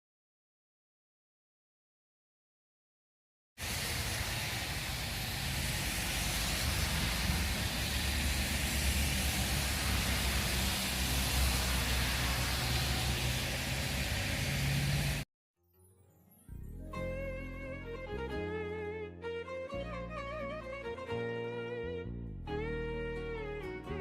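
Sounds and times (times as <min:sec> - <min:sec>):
vehicle road and engine noise: 0:03.6 - 0:15.3.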